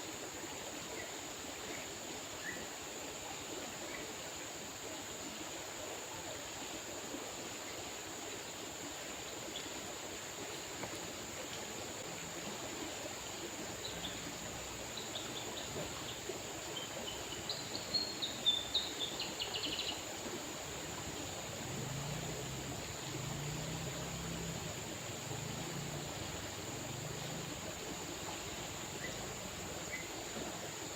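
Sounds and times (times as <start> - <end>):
river water flowing: 0.0 - 30.9
faint low hum: 10.5 - 30.9
bird chirping: 14.9 - 20.1, 28.9 - 30.2.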